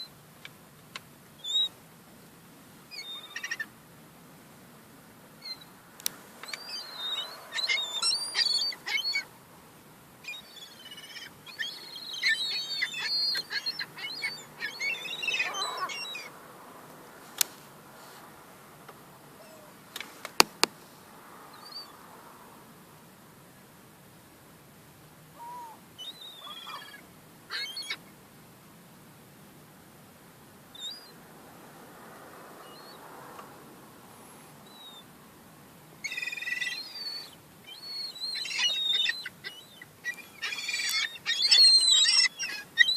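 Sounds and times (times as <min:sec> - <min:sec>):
gulls squealing calls: 0:02.9 - 0:03.7, 0:06.4 - 0:09.4, 0:10.2 - 0:16.4, 0:25.4 - 0:28.1, 0:36.0 - 0:42.9.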